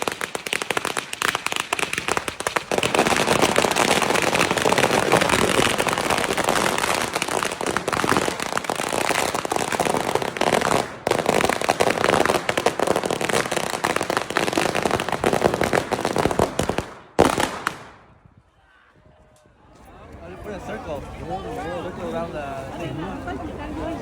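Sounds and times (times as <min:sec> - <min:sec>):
firecrackers going off: 0:00.0 - 0:18.3.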